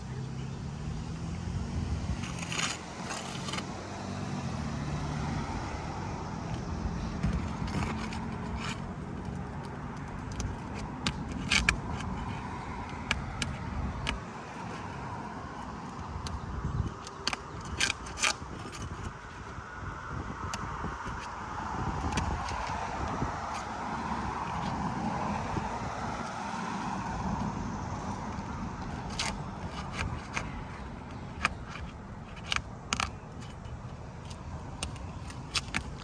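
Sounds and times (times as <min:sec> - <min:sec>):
metal tool scraping shingles: 0:02.1 - 0:19.6, 0:22.0 - 0:27.2, 0:28.4 - 0:36.0.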